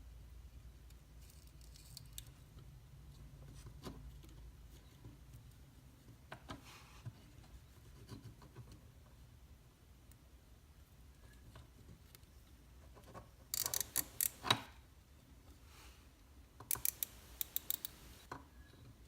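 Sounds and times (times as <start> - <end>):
plastic zip ties clicking: 13.6 - 14.6, 16.7 - 18.3.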